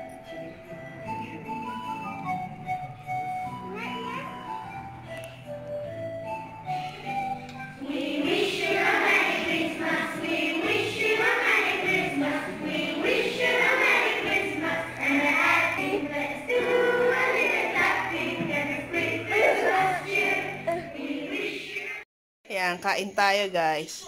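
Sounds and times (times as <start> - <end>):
choral singing: 7.0 - 22.0.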